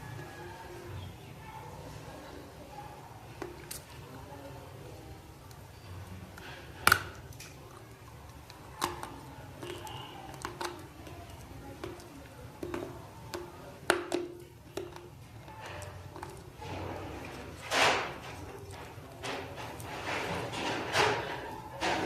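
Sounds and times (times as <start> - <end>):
wet chewing and mouth sounds: 5.4 - 20.2
clay crunching between teeth: 6.4 - 19.9.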